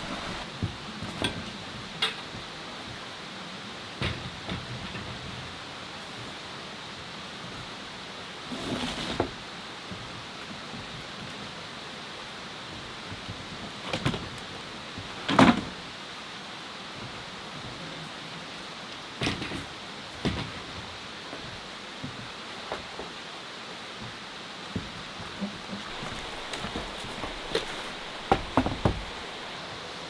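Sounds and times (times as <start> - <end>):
rustles: 0.0 - 0.5, 25.2 - 30.0
steady background hiss: 0.0 - 0.7, 5.0 - 30.0
brief knocks: 25.9 - 29.5.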